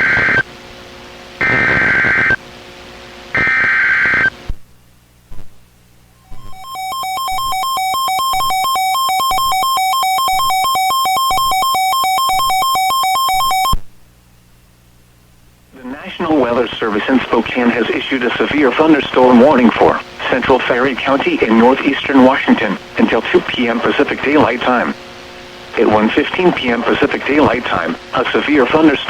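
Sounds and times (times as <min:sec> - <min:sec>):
shrill digital data bursts: 0:06.3 - 0:13.6
steady electronic alert tone: 0:06.3 - 0:13.6.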